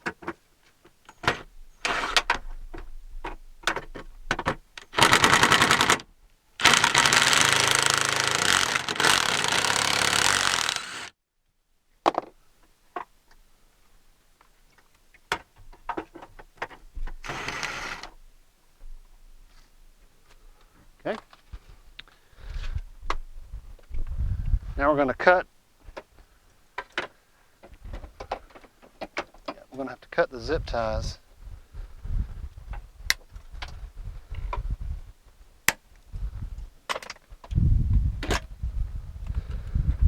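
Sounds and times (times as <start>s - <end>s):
impact driver hammering: 6.6s - 11.1s.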